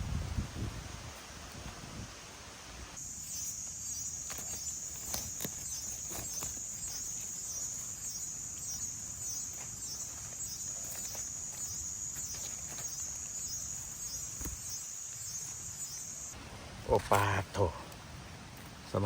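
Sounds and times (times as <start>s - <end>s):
insects buzzing: 0.0s - 19.0s.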